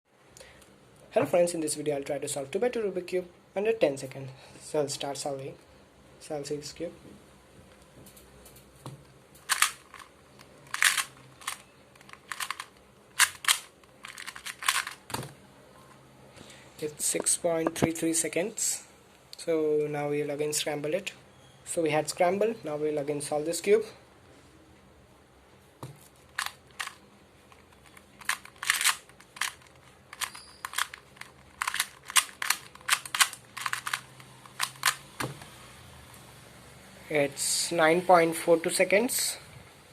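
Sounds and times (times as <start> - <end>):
puzzle cube plastic clicks: 9.4 - 15.2, 26.1 - 35.4.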